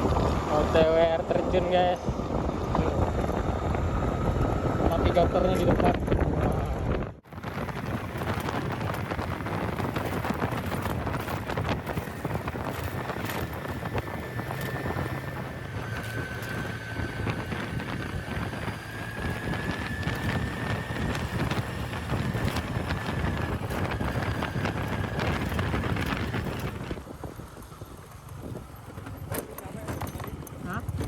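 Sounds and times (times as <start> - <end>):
vehicle on rough road: 0.0 - 31.0
wind buffeting microphone: 0.0 - 31.0
knocks and rattles: 5.5 - 27.0, 28.1 - 31.0.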